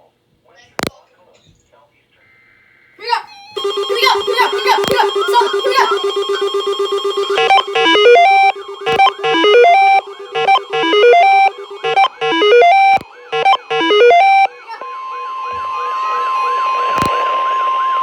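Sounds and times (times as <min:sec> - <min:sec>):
short low beeps: 0:03.6 - 0:14.5
electronic alert melody: 0:03.6 - 0:14.6
siren-like sweeping tone: 0:03.6 - 0:17.0
steady alarm tone: 0:03.6 - 0:17.2.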